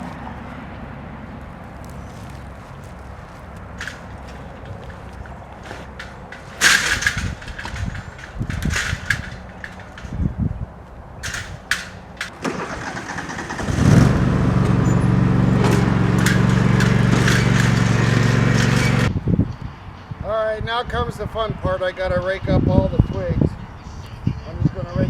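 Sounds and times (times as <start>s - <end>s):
knocks and clatter: 3.6s - 10.4s, 11.2s - 19.1s
small engine starting and running: 3.8s - 9.8s, 11.2s - 19.1s.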